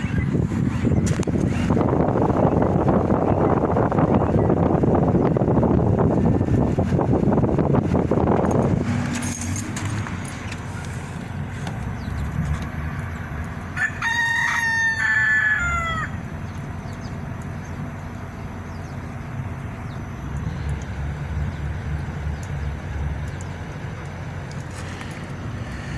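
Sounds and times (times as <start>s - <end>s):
wind rumble on microphone: 0.0s - 25.9s
rooster crowing: 13.7s - 16.2s.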